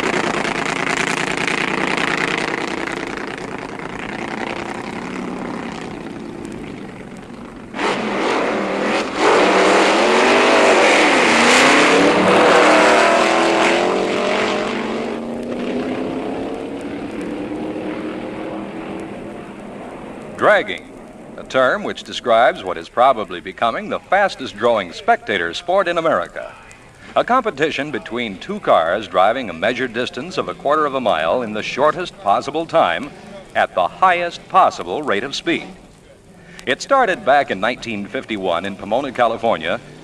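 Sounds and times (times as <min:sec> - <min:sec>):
louder car engine passing: 0:00.0 - 0:22.2
drag racing engines at full throttle: 0:00.0 - 0:40.0.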